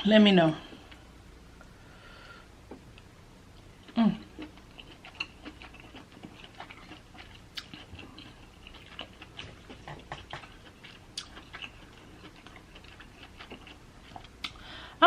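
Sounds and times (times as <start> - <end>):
chewing and biting seafood: 3.8 - 14.6.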